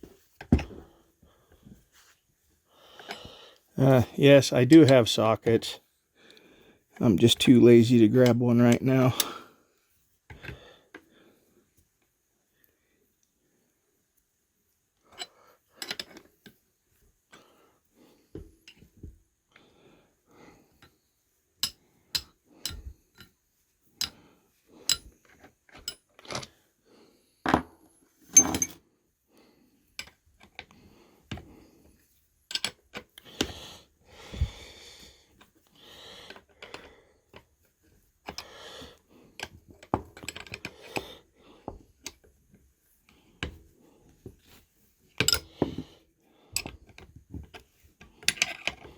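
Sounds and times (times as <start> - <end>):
wrench and metal parts clinking: 15.1 - 16.2, 28.3 - 28.8, 32.5 - 33.0, 45.2 - 45.8, 46.6 - 46.8, 48.2 - 48.8.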